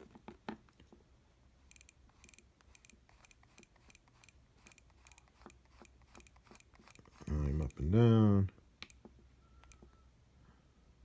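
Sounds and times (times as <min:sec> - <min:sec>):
faint electronic clicks: 0:08.8 - 0:10.0.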